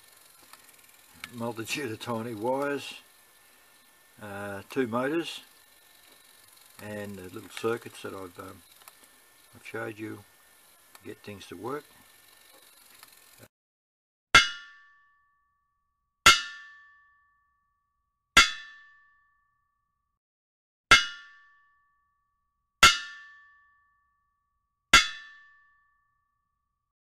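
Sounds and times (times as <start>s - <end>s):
hammer striking an anvil: 14.4s - 15.0s, 16.3s - 17.2s, 18.4s - 19.2s, 20.9s - 21.7s, 22.8s - 23.8s, 25.0s - 25.8s.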